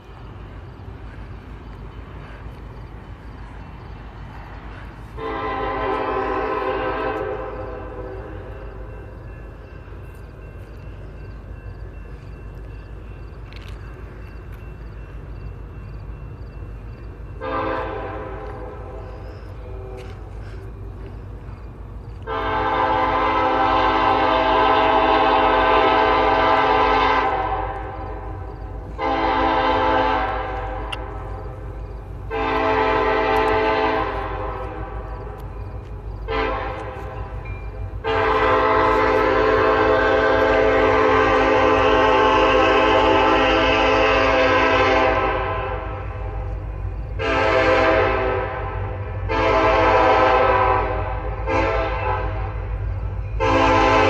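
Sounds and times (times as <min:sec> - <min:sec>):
locomotive air horn blasts: 0:05.1 - 0:08.5, 0:17.4 - 0:20.4, 0:22.2 - 0:31.3, 0:32.3 - 0:35.1, 0:36.3 - 0:37.2, 0:37.9 - 0:46.5, 0:47.1 - 0:52.8, 0:53.4 - 0:54.0.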